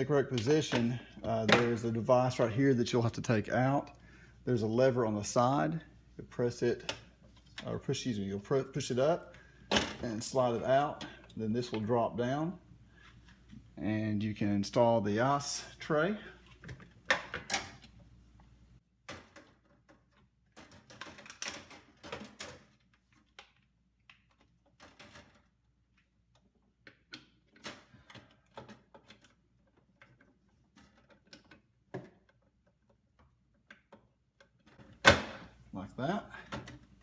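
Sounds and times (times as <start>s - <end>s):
plastic parts clicking and tapping: 19.1s - 35.4s.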